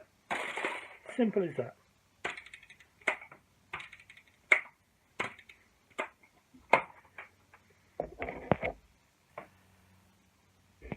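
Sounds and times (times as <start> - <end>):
sharp plastic clicks: 2.2 - 7.3.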